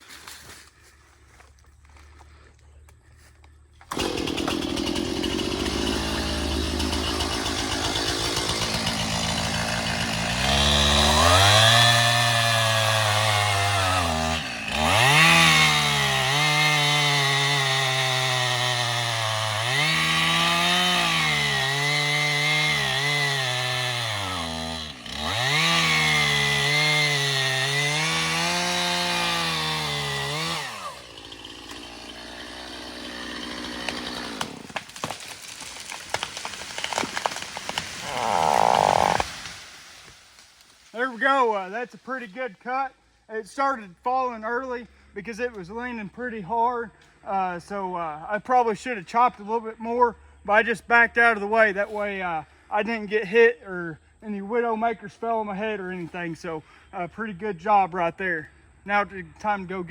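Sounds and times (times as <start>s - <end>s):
chainsaw cutting wood: 3.8s - 42.4s.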